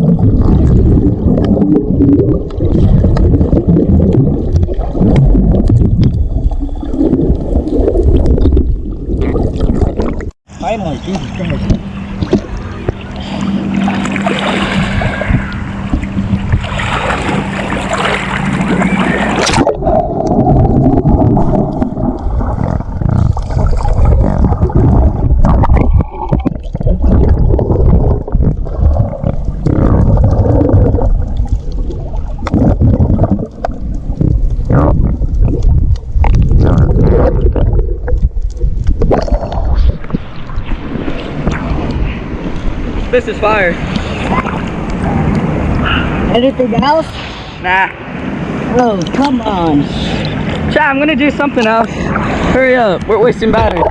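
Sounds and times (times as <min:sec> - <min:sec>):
muffled underwater bubbling: 0:00.0 - 0:10.4, 0:11.0 - 0:46.6, 0:50.2 - 0:53.9
water splashing: 0:00.0 - 0:53.9
underwater clicks and knocks: 0:00.4 - 0:10.3, 0:11.5 - 0:13.0, 0:19.4 - 0:42.8, 0:53.0 - 0:53.9.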